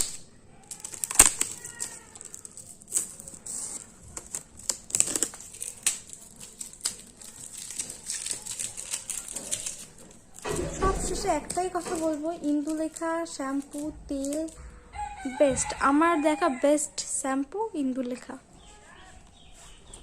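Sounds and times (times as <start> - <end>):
packaging crinkling: 0.0 - 15.2
faint squeak: 18.5 - 20.0.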